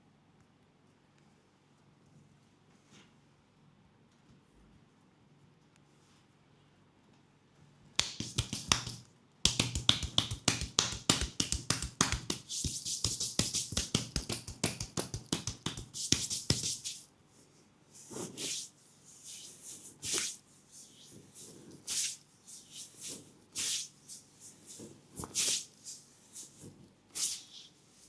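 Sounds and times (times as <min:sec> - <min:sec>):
percussive massage strikes on leg: 0:08.0 - 0:17.0.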